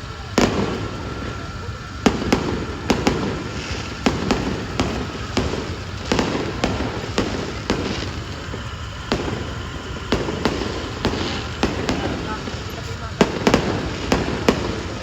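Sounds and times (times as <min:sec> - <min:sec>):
distant fireworks rumble: 0:00.0 - 0:15.0
fireworks bangs and crackles: 0:00.0 - 0:15.0.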